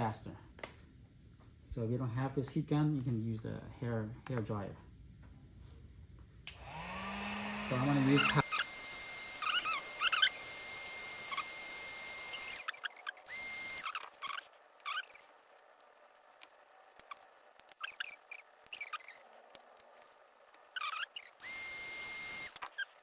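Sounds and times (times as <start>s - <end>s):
heat gun blowing: 6.5s - 15.2s, 20.8s - 23.0s
blade scraping glass: 17.8s - 19.3s, 20.8s - 21.4s.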